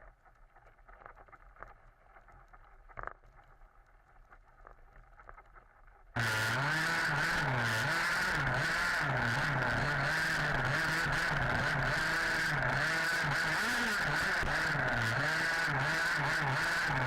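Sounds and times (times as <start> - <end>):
two-stroke engine revving: 6.2 - 17.0.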